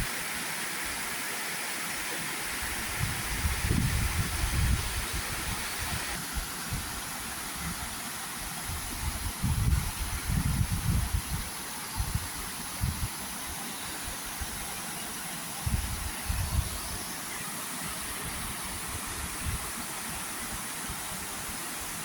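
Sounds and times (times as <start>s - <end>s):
waterfall rushing: 11.4s - 22.0s.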